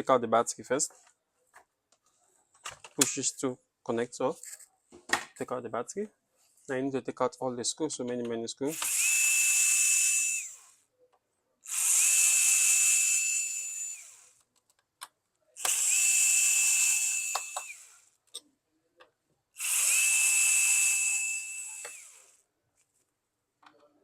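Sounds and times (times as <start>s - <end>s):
electric screwdriver whining: 8.7s - 10.8s, 11.7s - 14.4s, 15.6s - 18.2s, 19.6s - 22.4s.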